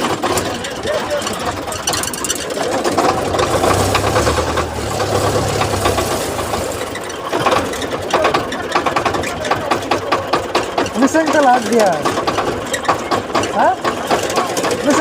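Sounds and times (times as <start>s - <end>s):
tractor diesel engine clatter: 0.0s - 15.0s
deep low hum: 3.1s - 7.1s.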